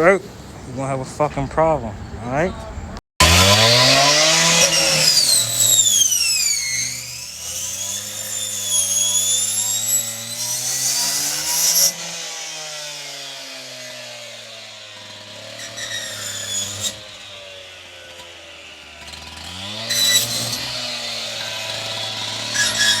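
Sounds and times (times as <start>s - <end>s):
power cutting tool whining: 3.2s - 23.0s
hiss of cutting: 3.6s - 11.9s.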